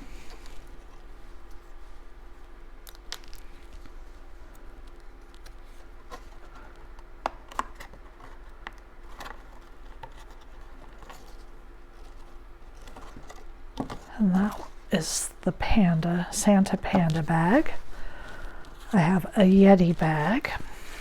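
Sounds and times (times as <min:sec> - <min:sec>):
cardstock rustling: 0:05.2 - 0:14.9.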